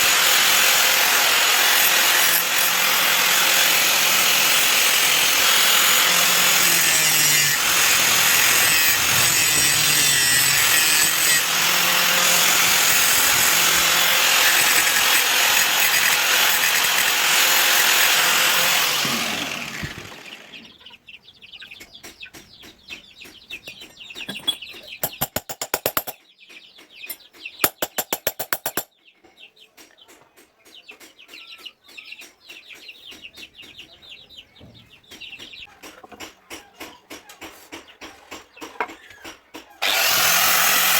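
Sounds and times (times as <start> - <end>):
power tool grinding steel: 0.0 - 20.8, 25.0 - 26.2, 27.6 - 28.9, 39.8 - 40.9.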